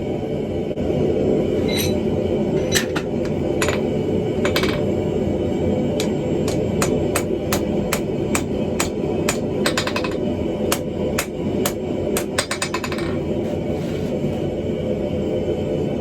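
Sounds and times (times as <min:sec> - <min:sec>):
hammer striking steel on anvil: 0:02.6 - 0:04.9, 0:06.0 - 0:13.2.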